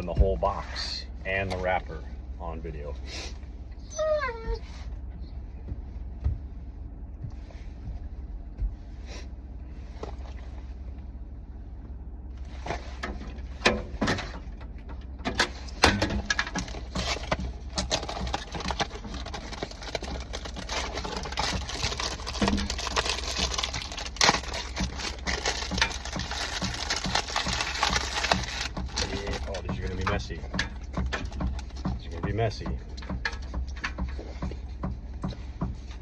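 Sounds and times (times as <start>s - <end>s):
low steady hum: 0.0s - 36.0s
wrapper crinkling and tearing: 16.4s - 30.1s.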